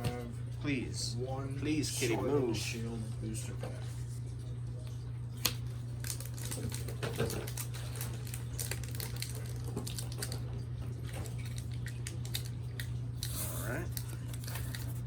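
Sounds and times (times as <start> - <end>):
cards clicking and crinkling: 5.4 - 15.0.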